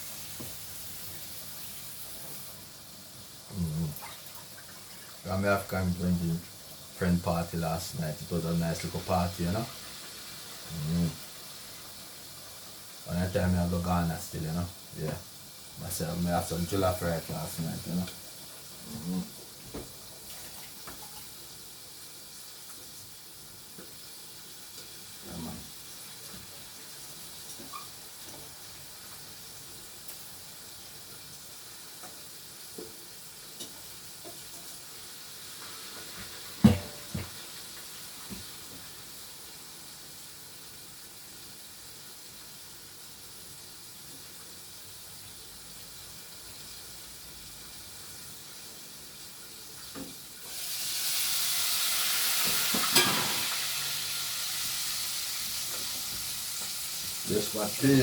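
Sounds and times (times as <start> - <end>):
chicken frying in oil: 0.0 - 58.0
faint sizzling: 0.0 - 58.0
kitchen knocks: 36.6 - 37.4.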